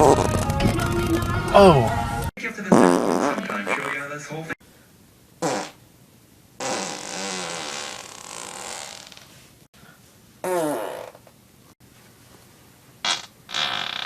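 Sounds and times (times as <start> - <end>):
human farts: 0.0 - 0.4, 2.7 - 4.0, 5.4 - 5.8, 6.6 - 9.4, 10.4 - 11.3, 13.0 - 14.0.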